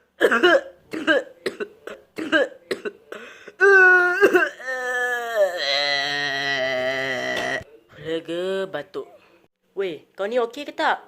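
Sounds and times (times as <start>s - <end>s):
person coughing: 0.2s - 4.8s
person groaning: 3.6s - 7.6s.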